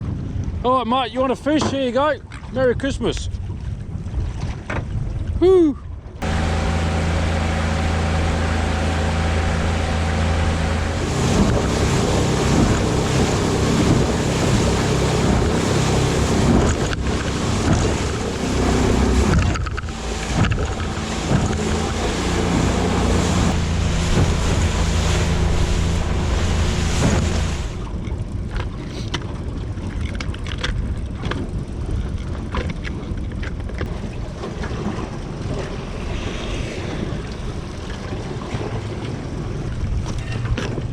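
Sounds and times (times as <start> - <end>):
waves: 0.0 - 40.9
wind buffeting microphone: 2.2 - 40.9
boat motor running: 6.0 - 40.9
water rushing: 6.2 - 28.2, 33.9 - 40.5.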